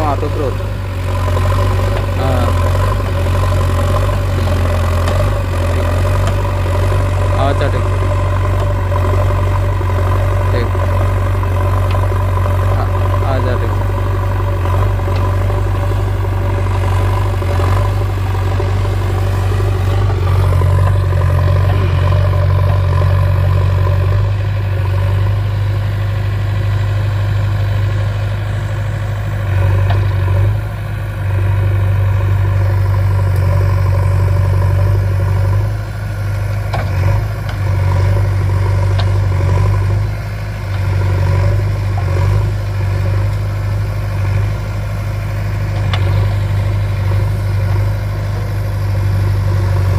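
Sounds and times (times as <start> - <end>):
diesel engine running under load: 0.0 - 49.9.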